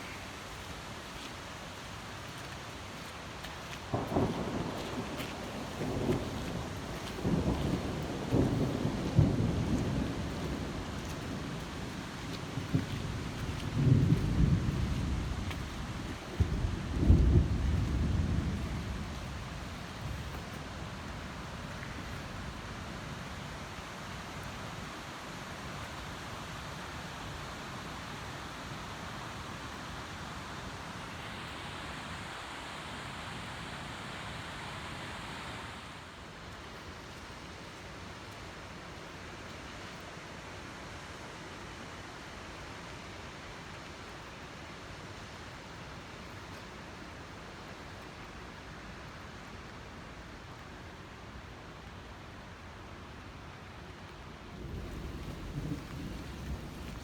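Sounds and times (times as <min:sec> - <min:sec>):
rain hiss: 0:00.0 - 0:57.0
thunder rumble: 0:03.9 - 0:20.3, 0:54.5 - 0:57.0.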